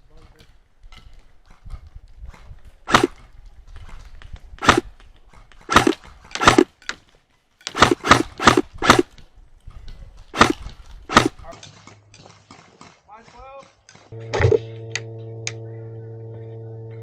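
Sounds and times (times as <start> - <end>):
airsoft gun firing single shots: 2.9 - 3.2, 4.6 - 4.9, 5.7 - 6.7, 7.7 - 9.2, 10.4 - 11.5.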